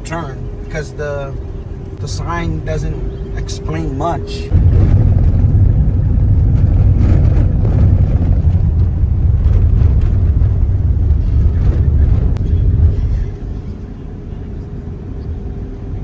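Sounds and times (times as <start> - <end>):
car road and wind noise: 0.0 - 16.0.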